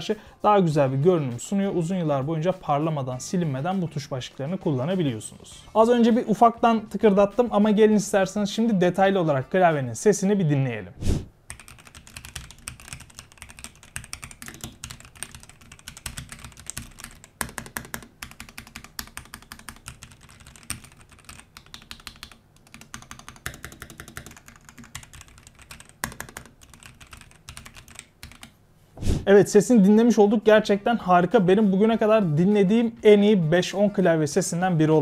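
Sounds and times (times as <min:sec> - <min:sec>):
mechanical keyboard typing: 0:11.5 - 0:28.5.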